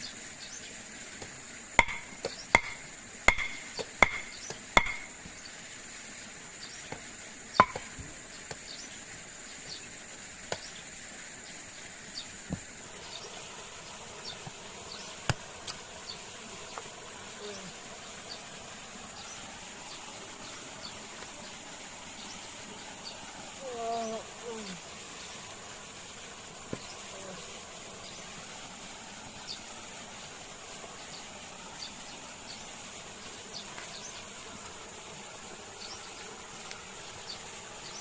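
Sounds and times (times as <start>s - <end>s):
forest insects droning: 0.0s - 38.0s
sharp knocks: 1.8s - 5.1s, 7.6s - 8.0s.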